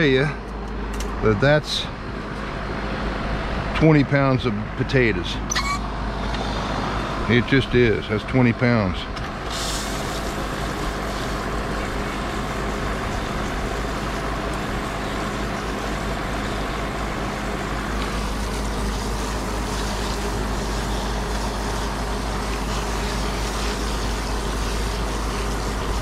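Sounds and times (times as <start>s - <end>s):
motor running steadily: 0.0s - 26.0s
rushing hiss: 9.5s - 26.0s.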